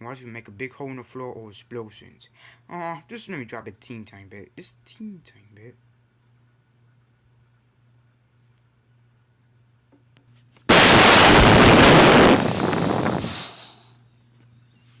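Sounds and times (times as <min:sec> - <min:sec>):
explosion blast rumbling: 0:10.7 - 0:13.7.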